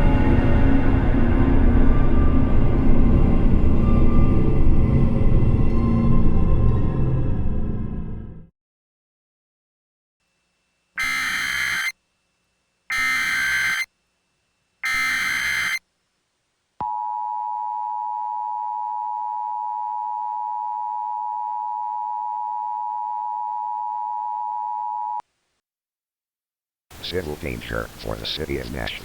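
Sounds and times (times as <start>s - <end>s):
harsh digital data bursts: 11.0s - 12.0s, 12.9s - 13.9s, 14.8s - 15.8s
two-tone attention signal: 11.0s - 12.0s, 12.9s - 13.9s, 14.8s - 15.8s.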